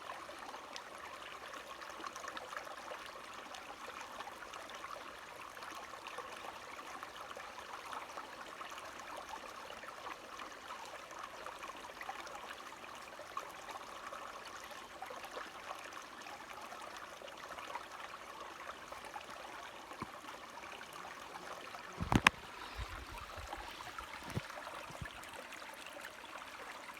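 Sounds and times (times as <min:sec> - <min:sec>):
small stream trickling: 0:00.0 - 0:26.9
soft thumps: 0:22.0 - 0:25.2.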